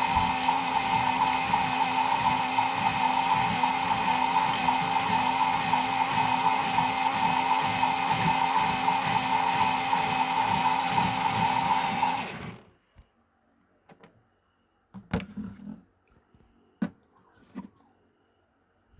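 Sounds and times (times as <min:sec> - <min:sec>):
toy washing machine motor whining: 0:00.0 - 0:12.7.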